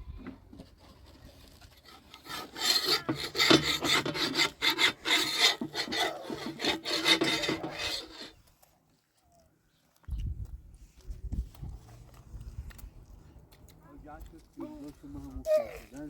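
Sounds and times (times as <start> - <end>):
loud rasping scraping strokes: 0.8 - 8.4.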